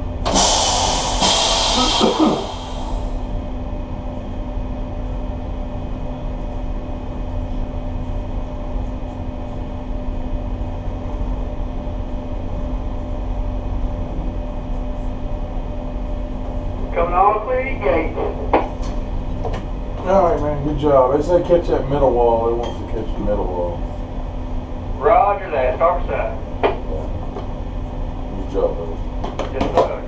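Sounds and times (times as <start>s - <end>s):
diesel engines droning: 0.0s - 3.4s, 16.8s - 27.4s.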